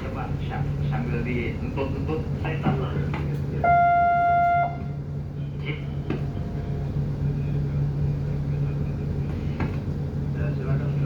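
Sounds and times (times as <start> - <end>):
low engine hum: 0.0 - 11.0
horn blast: 3.6 - 5.0.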